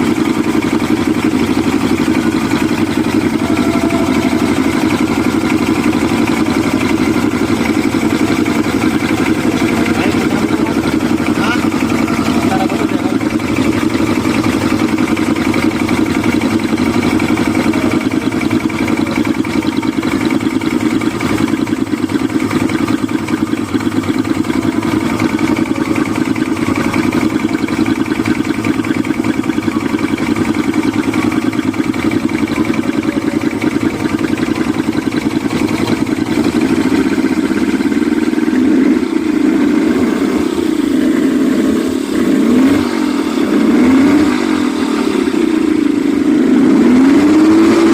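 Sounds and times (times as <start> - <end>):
outboard motor running and revving: 0.0 - 47.9.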